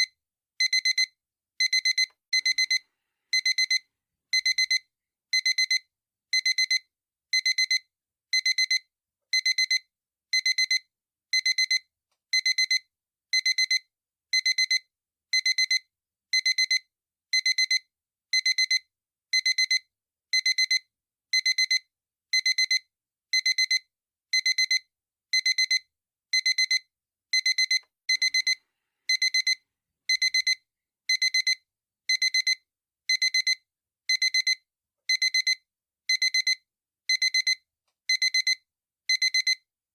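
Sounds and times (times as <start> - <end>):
alarm clock beeping: 0.0 - 2.8, 3.4 - 4.8, 5.4 - 5.8, 6.4 - 6.8, 7.4 - 7.8, 8.4 - 8.8, 9.4 - 9.8, 10.4 - 10.8, 11.4 - 11.8, 12.4 - 12.8, 13.4 - 13.8, 14.4 - 14.8, 15.4 - 15.8, 18.4 - 18.8, 19.4 - 19.8, 20.4 - 20.8, 21.4 - 21.8, 23.4 - 23.8, 24.4 - 24.8, 25.4 - 25.8, 26.4 - 26.8, 27.4 - 39.6.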